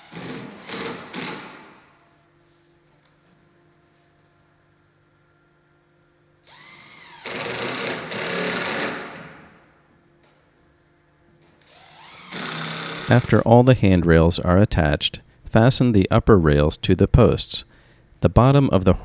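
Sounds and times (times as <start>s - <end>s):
power drill driving screw into wood: 0.0s - 1.8s, 6.5s - 9.6s, 11.6s - 13.3s.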